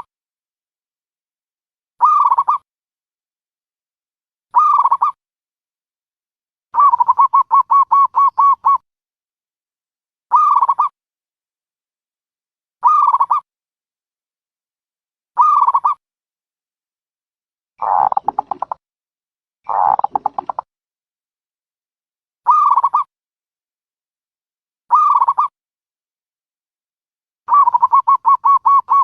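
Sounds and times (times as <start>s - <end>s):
dove cooing: 6.8s - 8.8s, 17.8s - 18.8s, 19.7s - 20.6s, 27.5s - 29.0s.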